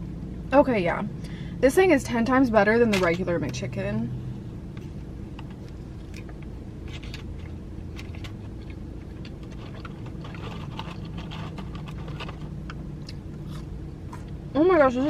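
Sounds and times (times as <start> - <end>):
steady low hum: 0.0 - 15.0
person chewing crispy food: 5.6 - 14.4.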